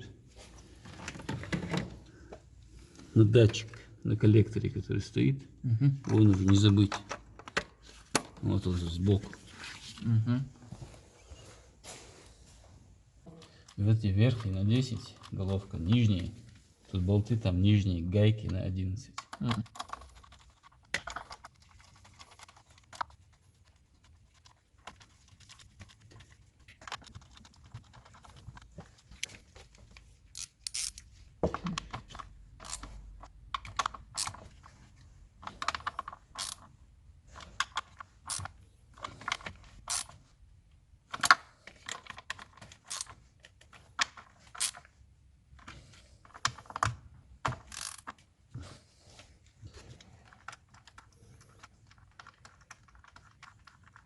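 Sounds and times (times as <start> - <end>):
socket wrench ratcheting: 30.3 - 31.0, 32.6 - 32.9, 35.9 - 36.7, 39.9 - 40.1, 42.8 - 43.2, 47.6 - 48.1.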